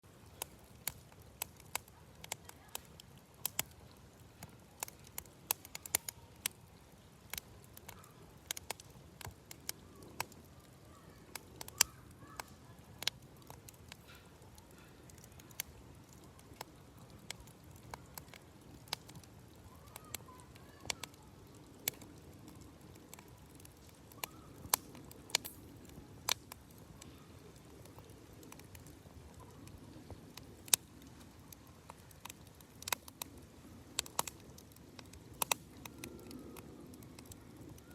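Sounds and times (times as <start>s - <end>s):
campfire crackling: 0.0s - 37.9s.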